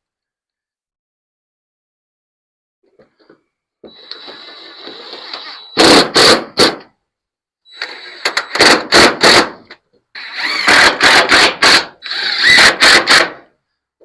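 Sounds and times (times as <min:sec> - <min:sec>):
power drill motor whine: 0:03.9 - 0:06.0, 0:07.7 - 0:08.6, 0:12.0 - 0:13.2.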